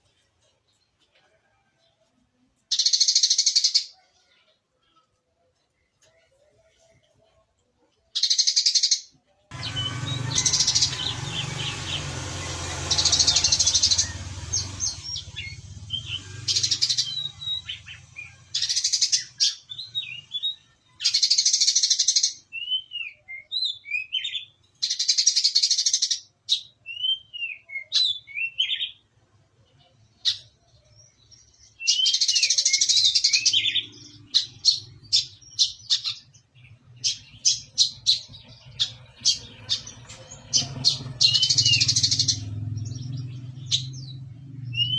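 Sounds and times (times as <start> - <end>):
bird chirps: 8.0 - 44.9
bird rapid high trills: 9.5 - 19.7, 37.1 - 42.8.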